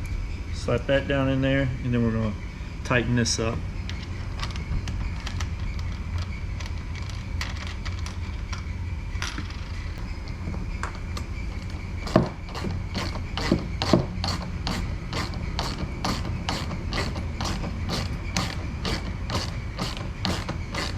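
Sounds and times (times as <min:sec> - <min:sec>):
steady low hum: 0:00.0 - 0:20.9
hand ratchet clicking: 0:12.1 - 0:20.9.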